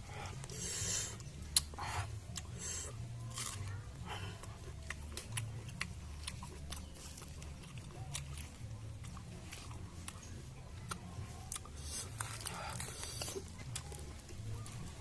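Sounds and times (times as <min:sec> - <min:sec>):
crisp wet eating noises: 0:00.0 - 0:15.0.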